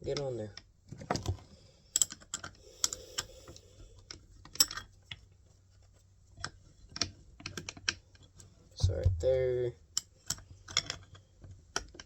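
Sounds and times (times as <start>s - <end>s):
clicks and taps of hard parts: 6.4s - 9.3s, 9.9s - 12.0s.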